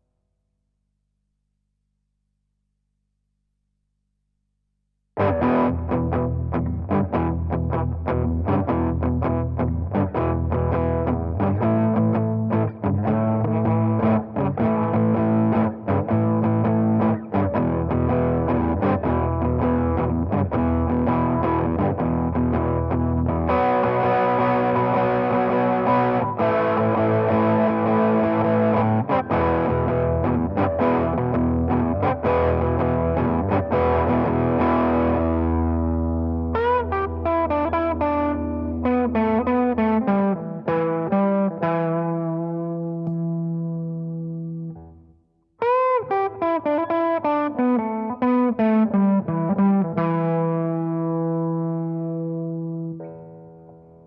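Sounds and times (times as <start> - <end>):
overdriven electric guitar: 5.2 - 54.0.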